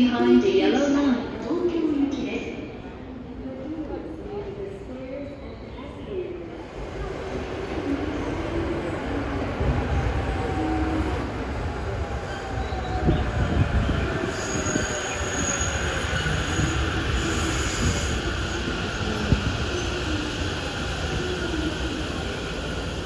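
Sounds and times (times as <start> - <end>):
train wheels rumbling on rail: 6.5 - 23.0
brake and wheel squeal: 14.2 - 19.2.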